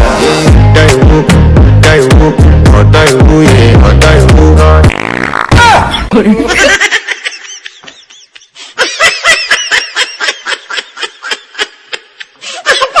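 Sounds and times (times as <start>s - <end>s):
person laughing: 5.7s - 13.0s.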